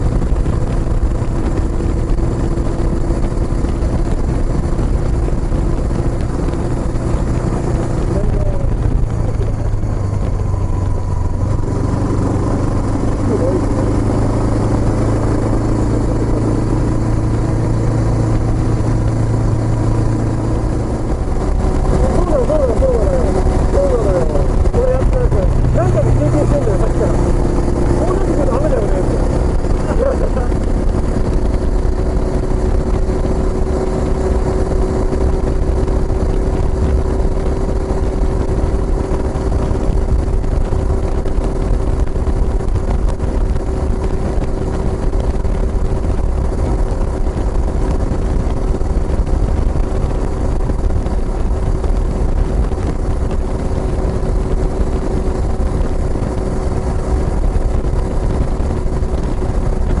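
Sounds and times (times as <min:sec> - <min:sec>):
motorcycle engine cruising: 0:00.0 - 1:00.0.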